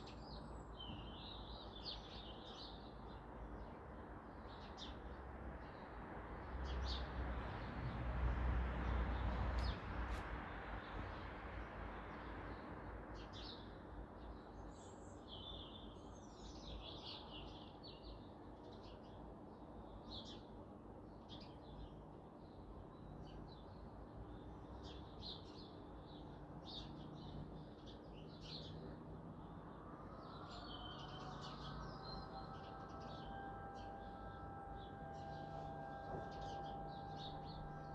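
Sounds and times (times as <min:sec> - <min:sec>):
low background noise: 0:14.2 - 0:37.9
faint steady multi-pitch tone: 0:29.2 - 0:37.9.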